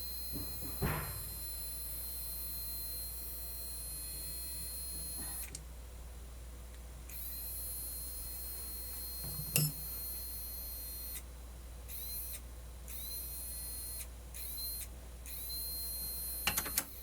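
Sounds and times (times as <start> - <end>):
high-pitched electrical whine: 0.0 - 5.6, 11.9 - 17.0
low mains hum: 0.0 - 17.0.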